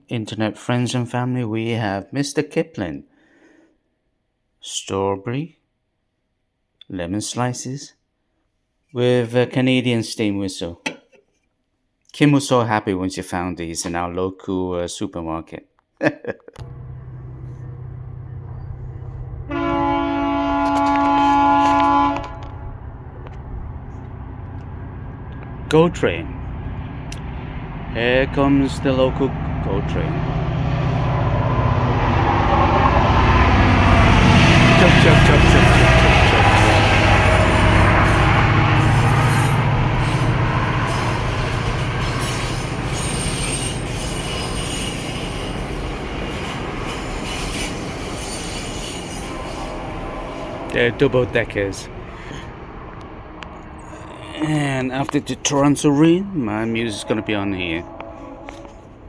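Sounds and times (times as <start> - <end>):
train horn chord: 16.6 - 43.0, 56.3 - 59.0
train rumble: 16.6 - 59.0.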